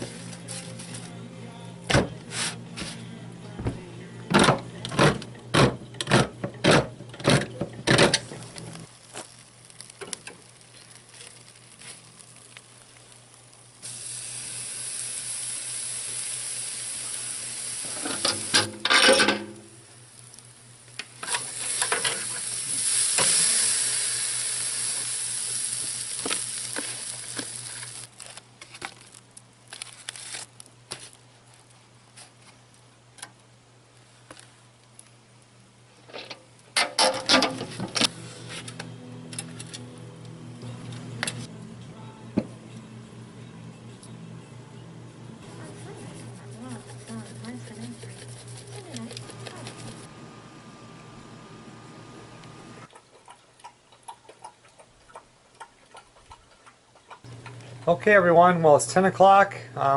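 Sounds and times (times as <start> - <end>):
food sizzling in a pan: 8.2 - 28.2.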